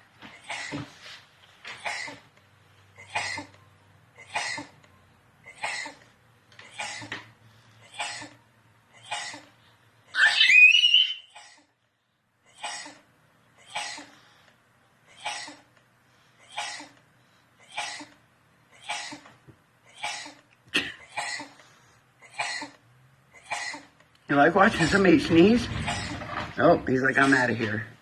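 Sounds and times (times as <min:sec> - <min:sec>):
child squealing: 0:10.1 - 0:11.6.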